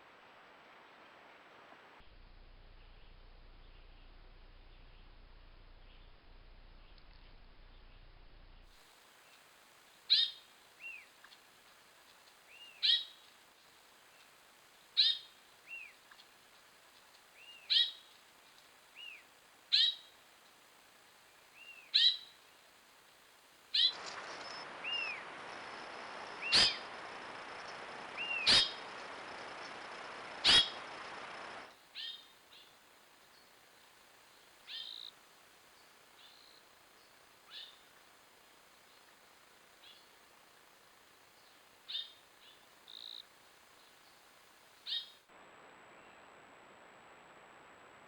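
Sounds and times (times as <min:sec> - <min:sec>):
steady hiss: 0:00.0 - 0:48.0
bird call: 0:10.1 - 0:11.2, 0:12.5 - 0:13.2, 0:15.0 - 0:16.2, 0:17.4 - 0:18.1, 0:19.0 - 0:20.1, 0:21.6 - 0:22.4, 0:23.7 - 0:25.2, 0:26.4 - 0:26.9, 0:28.2 - 0:28.9, 0:30.4 - 0:31.2, 0:32.0 - 0:32.8, 0:34.7 - 0:35.2, 0:41.9 - 0:43.3, 0:44.9 - 0:45.2.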